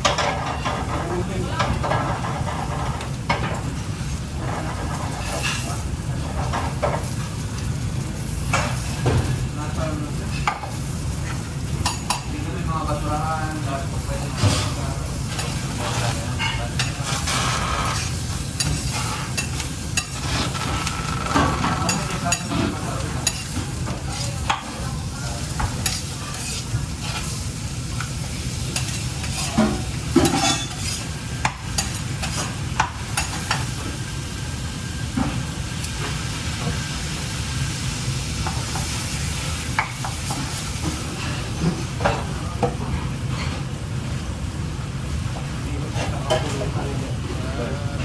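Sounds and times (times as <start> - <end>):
utensils and cookware clattering: 0.0 - 34.0, 45.9 - 46.8.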